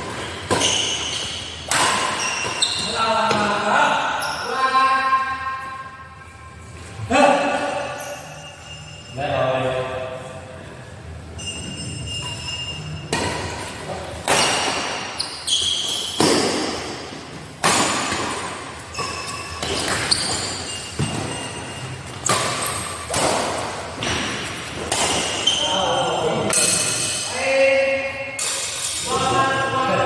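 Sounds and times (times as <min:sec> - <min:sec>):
racket hitting shuttlecock: 0:00.0 - 0:02.6, 0:13.1 - 0:21.5, 0:22.1 - 0:25.6
shoe squeaks on court: 0:00.2 - 0:03.0, 0:11.4 - 0:13.1, 0:14.3 - 0:16.6, 0:18.8 - 0:23.1, 0:25.2 - 0:26.0.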